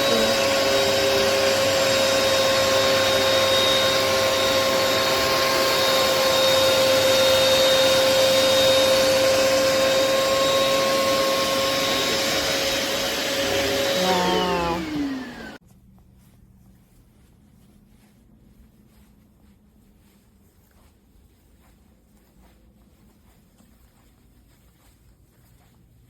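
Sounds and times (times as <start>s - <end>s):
carpet cleaner motor whining: 0.0s - 15.6s.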